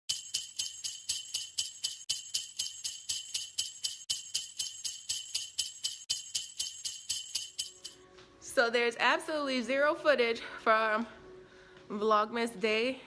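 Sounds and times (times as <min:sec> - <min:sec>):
jingle bells shaken: 0:00.1 - 0:08.0.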